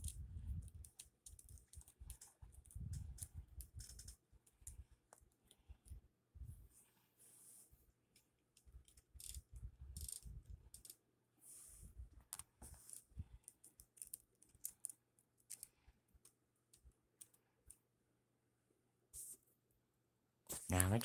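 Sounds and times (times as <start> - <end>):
plastic parts clicking and rattling: 0.0 - 6.0, 8.1 - 11.0, 12.3 - 17.8.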